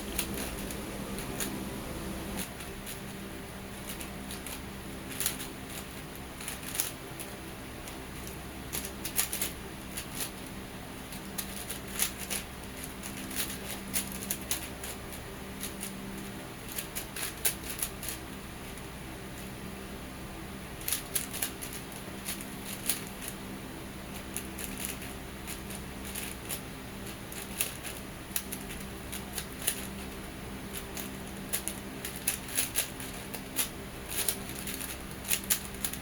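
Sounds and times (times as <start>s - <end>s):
puzzle cube clicking: 30.9s - 36.0s.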